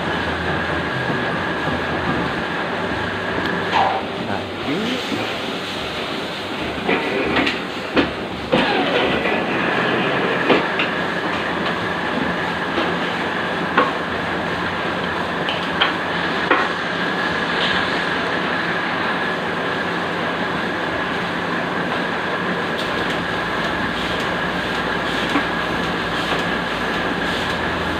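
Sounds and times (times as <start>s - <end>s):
cutting machine whining: 8.5s - 10.5s.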